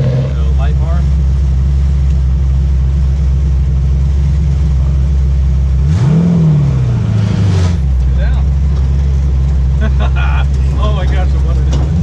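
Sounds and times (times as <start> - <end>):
engine running and revving: 0.0 - 2.3, 3.8 - 12.0.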